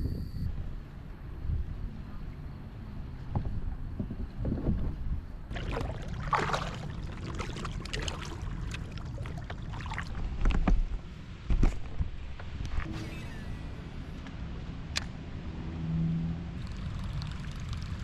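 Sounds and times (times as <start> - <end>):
steady low rumble: 3.2 - 15.8
water splashing and trickling: 5.5 - 10.9, 16.6 - 18.0.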